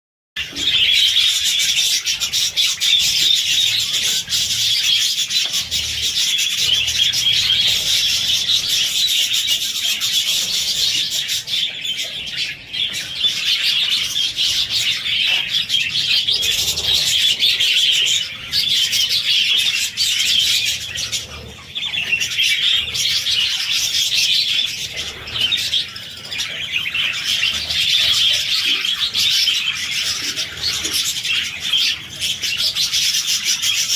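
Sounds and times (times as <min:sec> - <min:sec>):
budgerigars chattering: 0:00.4 - 0:33.9.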